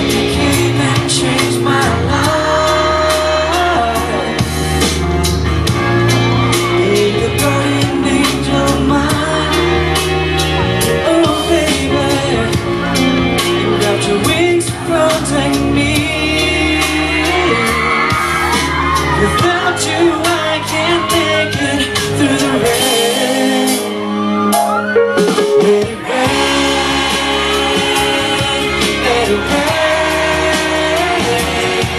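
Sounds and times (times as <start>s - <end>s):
live pop-rock song: 0.0s - 31.9s
audience shouting and whooping: 17.0s - 22.4s.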